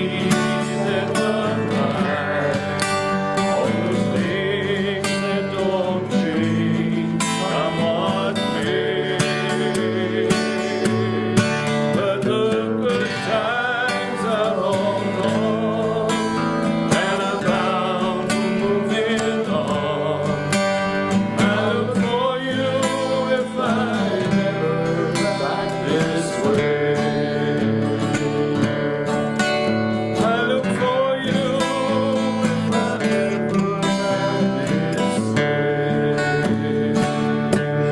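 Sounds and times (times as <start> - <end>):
acoustic guitar strumming: 0.0 - 37.9.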